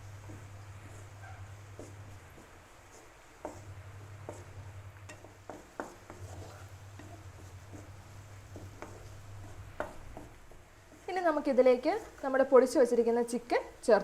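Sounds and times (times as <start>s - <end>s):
steady low hum: 0.0s - 13.9s
faint sizzle: 0.0s - 14.0s
spoon scraping a pan: 0.2s - 12.5s
spoon knocking against pan: 4.2s - 6.3s, 9.7s - 10.4s.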